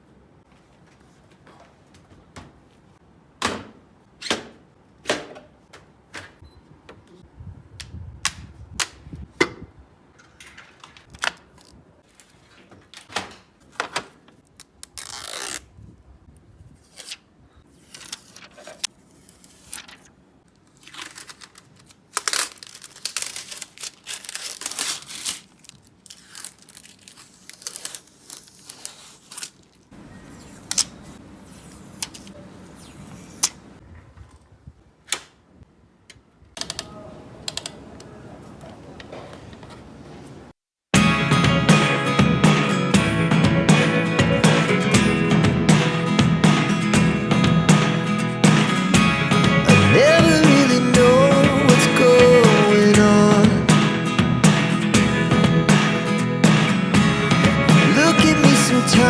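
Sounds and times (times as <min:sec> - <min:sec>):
packaging rustling and tearing: 0:14.4 - 0:15.7, 0:17.8 - 0:29.9.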